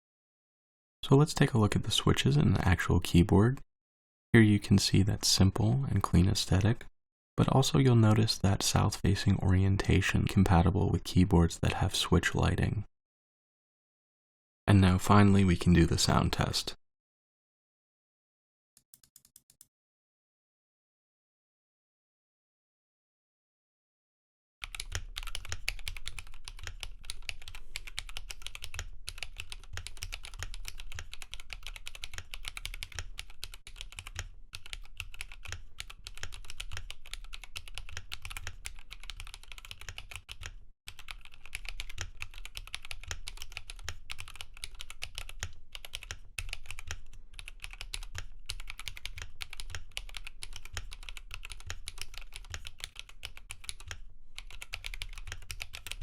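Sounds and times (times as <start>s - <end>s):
typing on mechanical keyboard: 24.6s - 56.0s.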